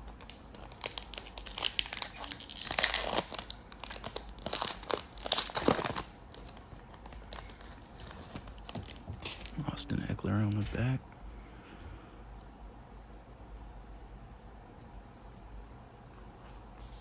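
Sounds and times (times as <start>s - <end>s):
wrapper tearing and crinkling: 0.0s - 9.6s.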